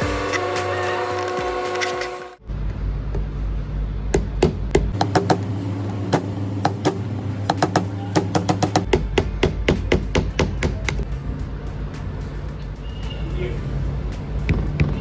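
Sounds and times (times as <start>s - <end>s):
hammer tapping: 6.1s - 11.1s.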